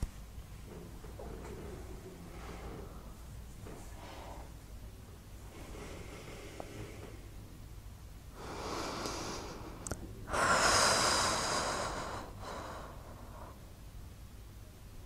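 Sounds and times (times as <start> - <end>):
person breathing heavily: 5.5 - 7.2, 8.4 - 13.7.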